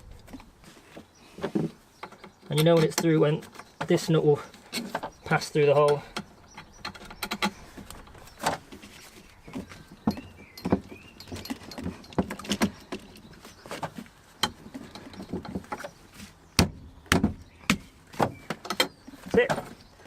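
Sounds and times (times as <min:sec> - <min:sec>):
metallic clicks and knocks: 0:02.0 - 0:04.0, 0:04.6 - 0:08.6, 0:18.4 - 0:19.8.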